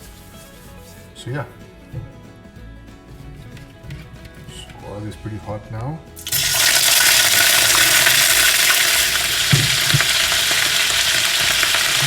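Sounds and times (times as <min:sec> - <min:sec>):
vegetables sizzling in hot oil: 0:06.2 - 0:12.0
low knocks: 0:09.4 - 0:10.3.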